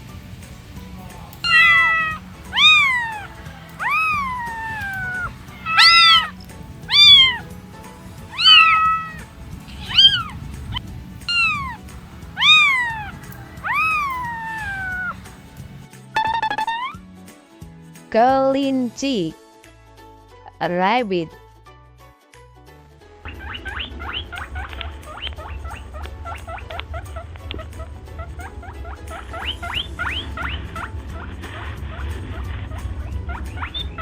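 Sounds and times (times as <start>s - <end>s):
cat meowing: 1.3s - 15.7s.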